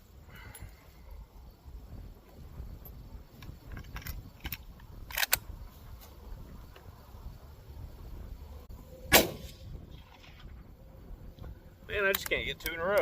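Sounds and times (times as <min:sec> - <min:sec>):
metallic rifle lever clicks: 0:03.7 - 0:05.4, 0:12.1 - 0:13.0
rifle shot with echo: 0:09.1 - 0:09.6.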